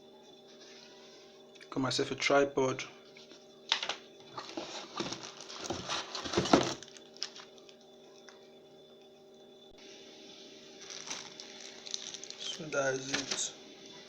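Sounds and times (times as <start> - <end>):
steady low hum: 0.0 - 14.0
rustling and knocks of handling: 4.2 - 7.4.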